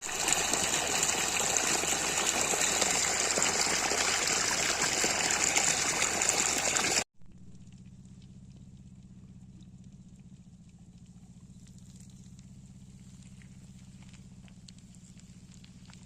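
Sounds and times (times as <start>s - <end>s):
water gushing: 0.0s - 7.0s
faint low hum: 7.2s - 16.0s.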